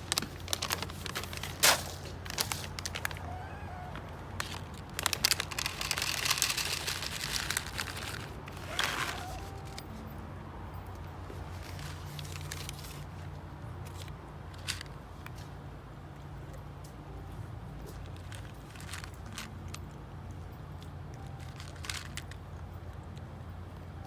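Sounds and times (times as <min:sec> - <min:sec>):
crinkling and crunching: 0:00.0 - 0:10.0, 0:11.0 - 0:15.6, 0:17.8 - 0:20.0, 0:20.8 - 0:22.6.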